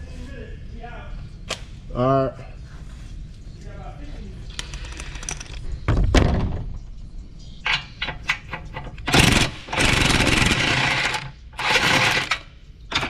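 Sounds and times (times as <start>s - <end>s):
power tool running in bursts: 9.1s - 12.4s.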